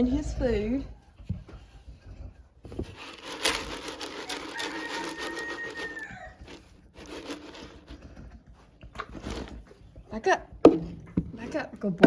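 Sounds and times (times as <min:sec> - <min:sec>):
sharp clicks and clatter: 0:02.8 - 0:08.1
rooster crowing: 0:04.2 - 0:06.6.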